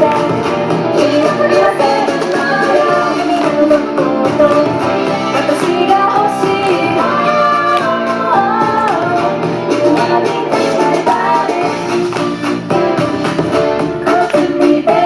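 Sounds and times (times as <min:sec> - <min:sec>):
pop song with woman singing: 0:00.0 - 0:15.0.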